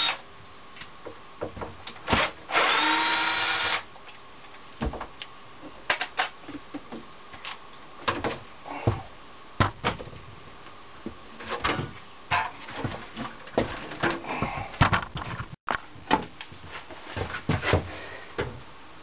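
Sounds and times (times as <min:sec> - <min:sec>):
objects knocking and clattering: 0:11.4 - 0:16.3.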